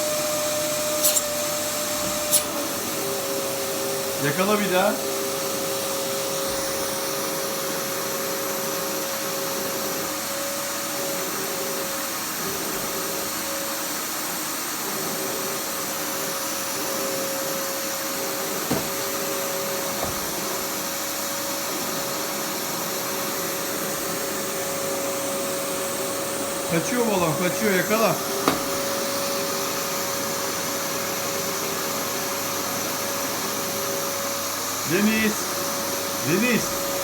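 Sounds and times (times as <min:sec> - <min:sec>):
vacuum cleaner running: 0:00.0 - 0:37.0.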